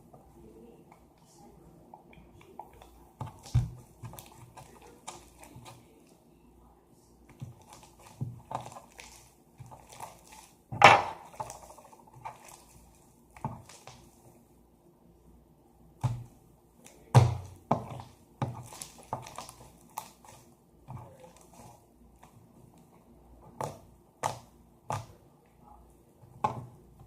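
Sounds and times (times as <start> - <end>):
slime squelching by hand: 7.3 - 14.4, 16.0 - 25.2.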